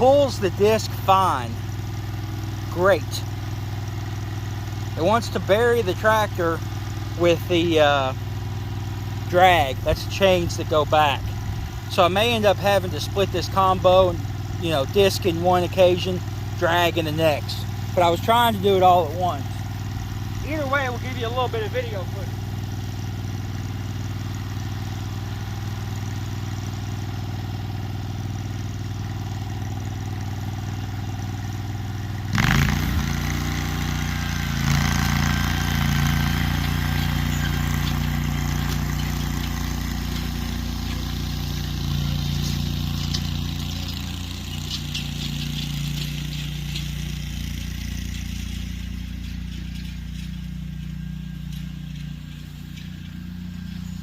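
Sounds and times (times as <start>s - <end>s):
riding lawn mower engine: 0.0s - 54.0s
light rattling: 35.0s - 54.0s.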